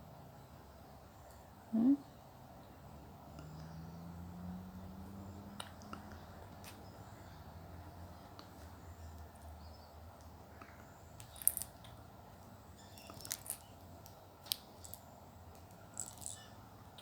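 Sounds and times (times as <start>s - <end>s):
toy clicks and rattles: 11.2s - 11.9s, 13.0s - 13.8s, 14.5s - 16.5s.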